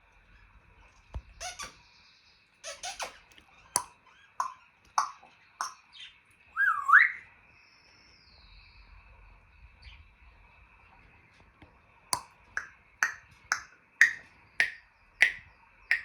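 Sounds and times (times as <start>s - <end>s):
parrot clicking: 3.8s - 5.8s, 12.2s - 16.0s
parrot swooping whistle: 6.6s - 7.2s.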